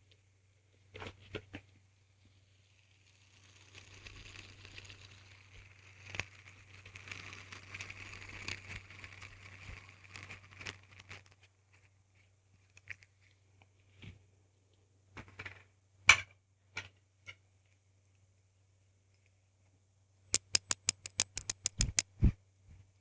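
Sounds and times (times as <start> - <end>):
hand spinner whirring and rattling: 2.5 - 11.4, 20.3 - 22.3.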